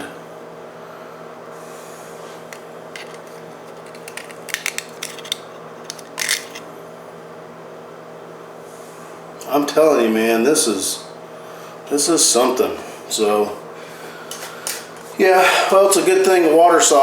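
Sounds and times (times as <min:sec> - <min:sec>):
steady room hum: 0:00.0 - 0:17.0
tool scraping and clicking: 0:02.5 - 0:06.6.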